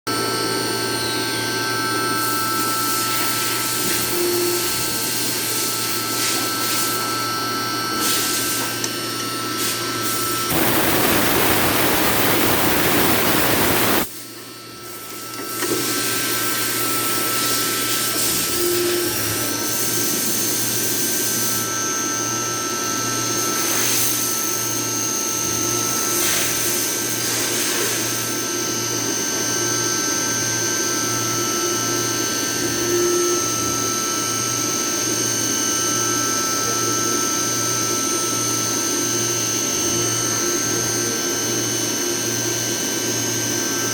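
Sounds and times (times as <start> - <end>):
milling machine whining: 0.1 - 14.1
coolant hiss: 2.2 - 21.6.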